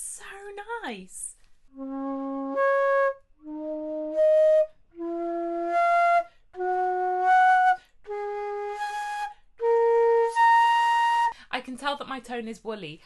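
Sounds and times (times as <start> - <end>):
flute notes: 1.7 - 11.4.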